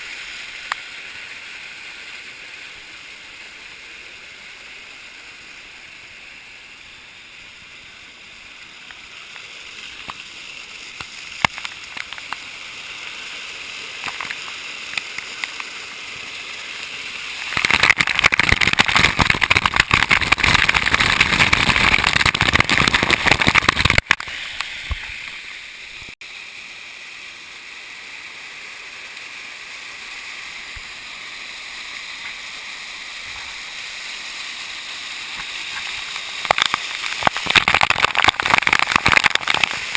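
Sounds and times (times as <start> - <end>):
waterfall and stream rushing: 0.0 - 39.9
loud pouring splashing water: 9.3 - 25.5, 32.1 - 39.9.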